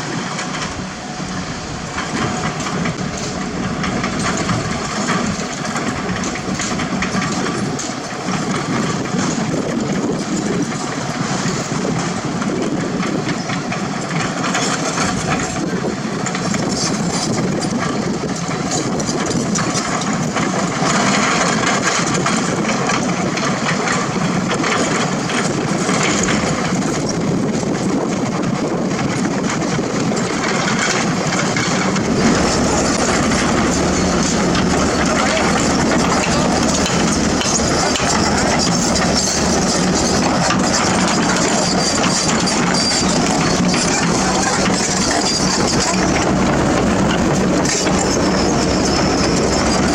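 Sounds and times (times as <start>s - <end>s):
diesel construction machinery running: 0.0s - 49.9s
metallic clatter: 0.2s - 10.6s, 29.1s - 49.9s.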